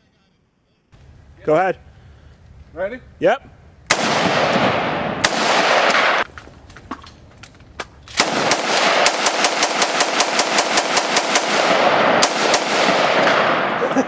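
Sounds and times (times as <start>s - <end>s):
rapid rifle gunfire: 3.9s - 6.2s, 8.2s - 14.0s
single gunshots: 3.9s - 6.3s, 8.1s - 14.0s.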